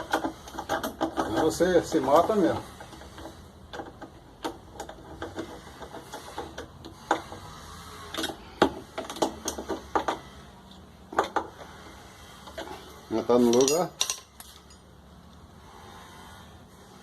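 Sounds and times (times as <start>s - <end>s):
machine parts clicking and knocking: 0.0s - 7.5s, 8.1s - 10.4s, 13.4s - 14.8s.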